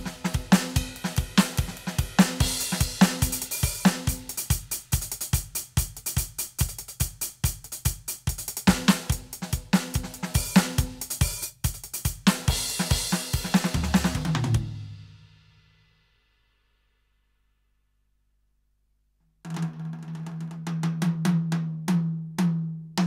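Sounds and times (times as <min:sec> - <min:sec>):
electronic drum kit groove: 0:00.0 - 0:14.8.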